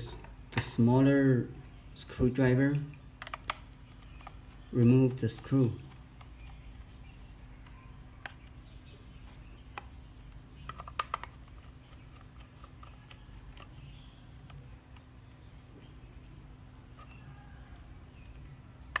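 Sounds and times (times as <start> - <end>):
screwdriver clicking on plastic: 9.7 - 14.6.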